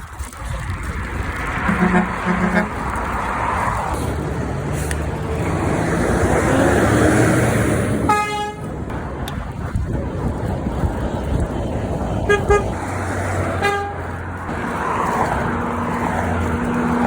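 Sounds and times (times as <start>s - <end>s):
truck engine passing: 0.6s - 17.0s
short high horn toot: 1.7s - 2.8s, 8.1s - 8.7s.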